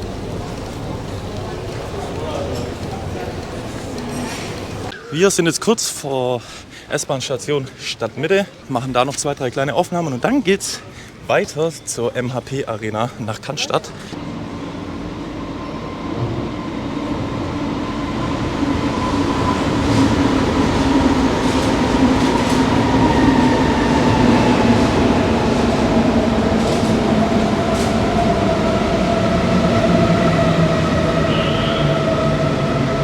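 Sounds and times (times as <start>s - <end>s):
train running noise: 0.0s - 4.9s, 13.9s - 33.0s
train whine gliding down: 14.2s - 33.0s.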